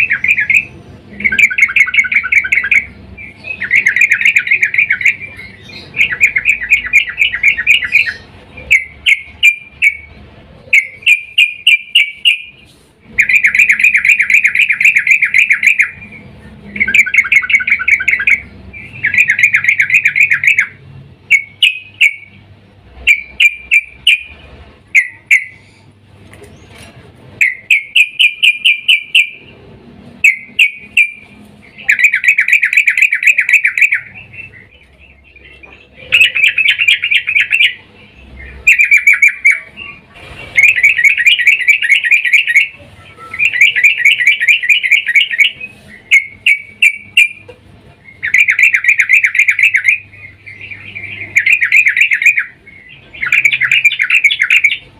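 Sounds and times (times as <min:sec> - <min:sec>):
bulbul chattering calls: 0:00.0 - 0:22.4, 0:23.0 - 0:29.6, 0:30.2 - 0:54.9.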